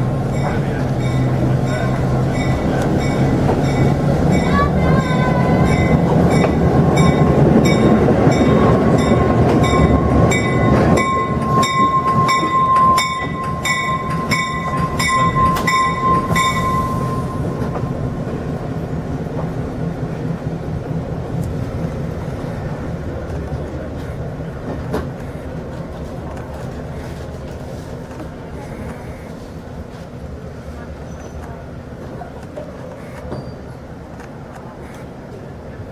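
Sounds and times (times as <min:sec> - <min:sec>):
locomotive bell ringing: 0:00.0 - 0:18.4
diesel locomotive passing: 0:00.0 - 0:35.9.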